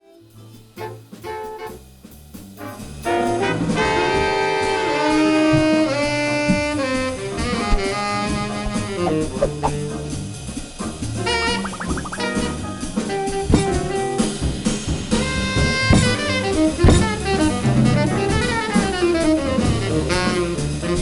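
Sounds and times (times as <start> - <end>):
jazz music with brass and drums: 0.2 - 21.0.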